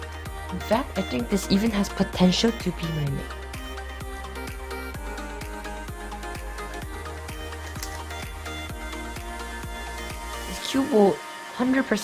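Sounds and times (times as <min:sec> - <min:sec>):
upbeat electronic music: 0:00.0 - 0:12.0.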